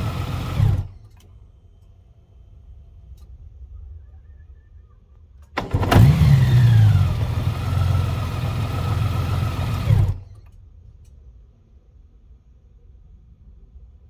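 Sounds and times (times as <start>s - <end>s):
motorcycle engine revving and idling: 0.0s - 1.0s, 5.6s - 10.4s
motorcycle engine start clunk: 0.0s - 1.3s, 5.4s - 10.6s.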